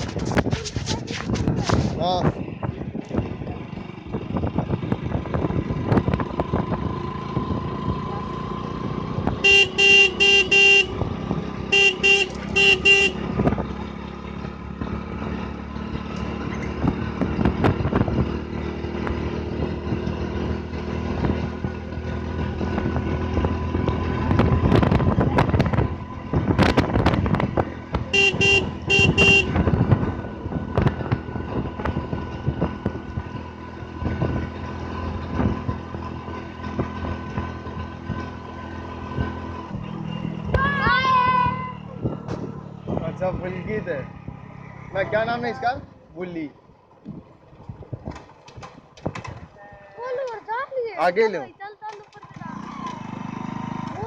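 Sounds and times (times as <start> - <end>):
motorcycle engine running: 0.0 - 54.0
horn short toots: 9.4 - 11.1, 11.7 - 13.3, 28.1 - 29.7.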